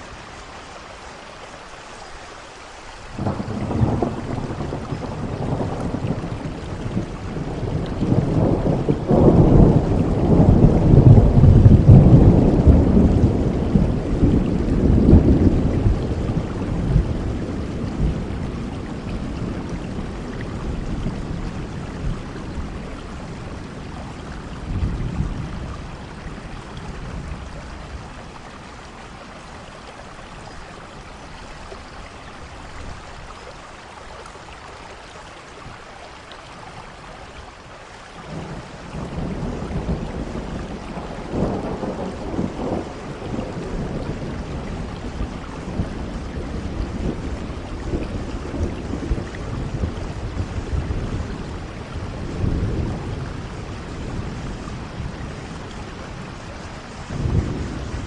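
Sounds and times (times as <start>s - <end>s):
steady rain hiss: 0.0s - 58.0s
thunder rolling: 3.2s - 26.0s, 38.3s - 58.0s.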